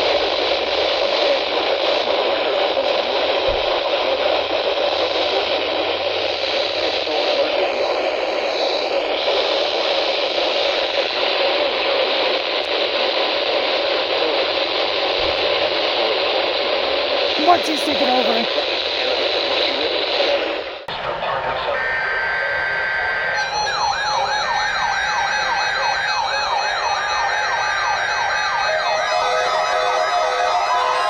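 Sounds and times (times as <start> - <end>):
radio static hiss: 0.0 - 21.6.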